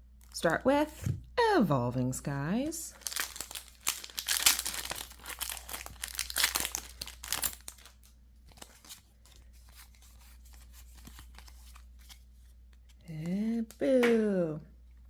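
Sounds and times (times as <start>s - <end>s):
foil wrapper tearing and crinkling: 2.9s - 9.0s.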